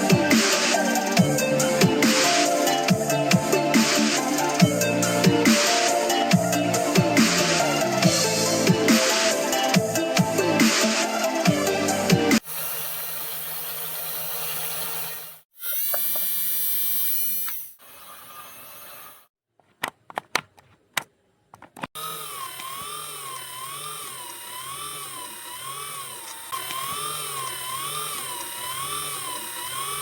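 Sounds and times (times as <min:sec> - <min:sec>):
small electric motor whirring: 0:12.4 - 0:19.2, 0:22.0 - 0:30.0.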